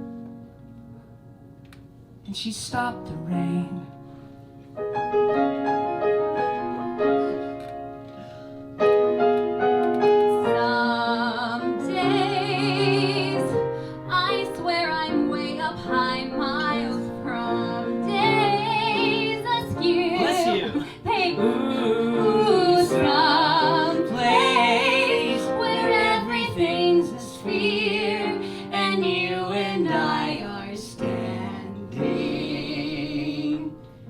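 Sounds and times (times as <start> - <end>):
piano chords and melody: 0.0 - 34.0
woman singing with vibrato: 10.5 - 31.4.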